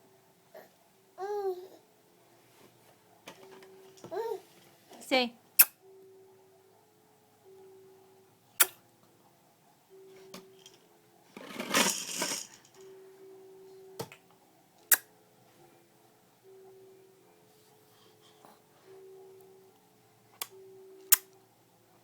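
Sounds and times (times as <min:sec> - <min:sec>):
baby lip-smacking kisses: 0:05.6 - 0:05.8.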